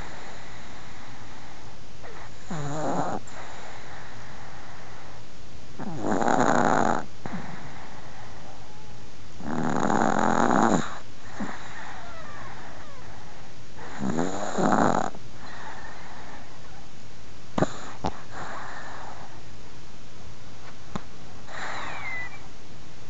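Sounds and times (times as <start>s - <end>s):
dog snoring: 0.0s - 5.2s, 5.8s - 8.7s, 9.4s - 13.2s, 13.8s - 16.8s, 17.6s - 19.4s, 21.4s - 22.4s.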